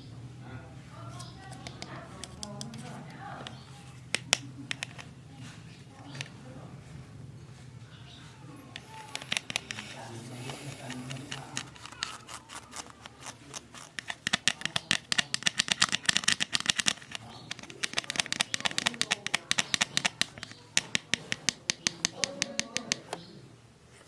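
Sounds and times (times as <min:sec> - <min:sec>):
packaging clicks and scratches: 0:01.2 - 0:05.1, 0:08.6 - 0:23.2.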